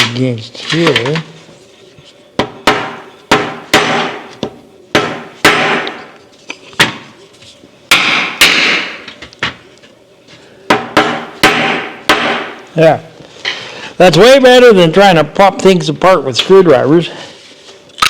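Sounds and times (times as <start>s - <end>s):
hammer striking metal: 2.4s - 4.3s, 4.9s - 6.0s, 7.9s - 9.0s, 10.7s - 12.6s.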